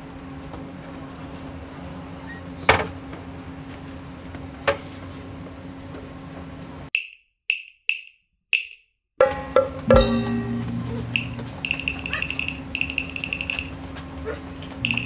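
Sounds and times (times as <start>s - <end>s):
sharp knocks: 9.2s - 10.8s
steady low hum: 9.2s - 15.0s.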